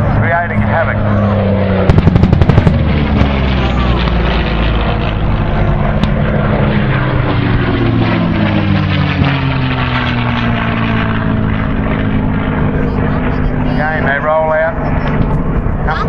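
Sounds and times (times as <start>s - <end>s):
propeller plane engine passing: 0.0s - 16.0s
sharp crack: 1.8s - 5.2s.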